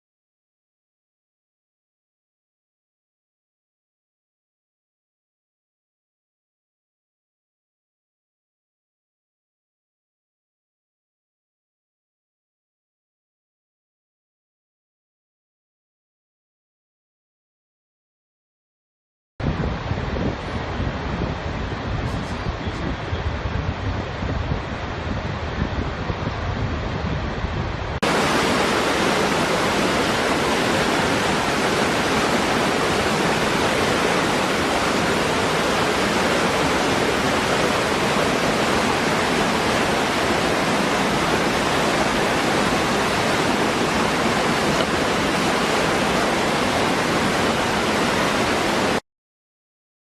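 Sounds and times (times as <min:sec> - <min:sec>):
waterfall roaring: 0:19.7 - 0:49.0.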